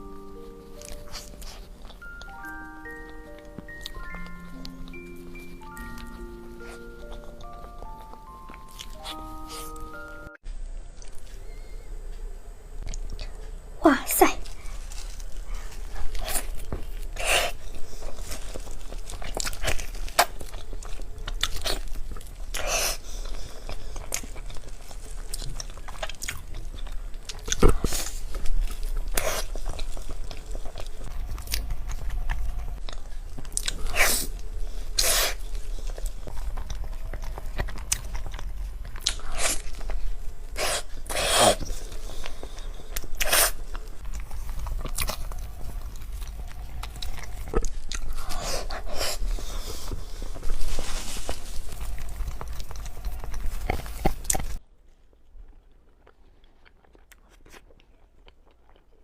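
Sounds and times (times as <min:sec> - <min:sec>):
person chewing and biting: 0:00.0 - 0:10.3, 0:14.5 - 0:54.6, 0:55.4 - 0:59.0.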